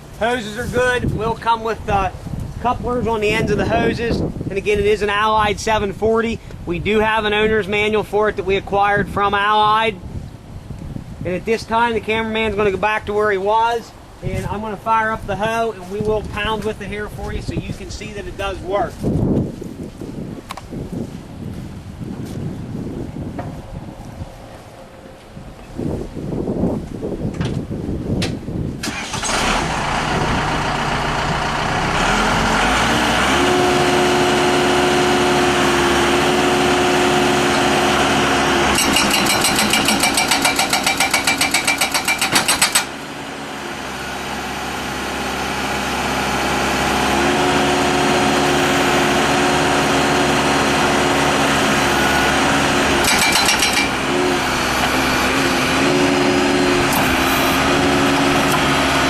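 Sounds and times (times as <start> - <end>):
diesel engine revving: 28.8 - 59.0
hydraulic hammer pounding concrete: 29.2 - 43.0, 47.1 - 59.0.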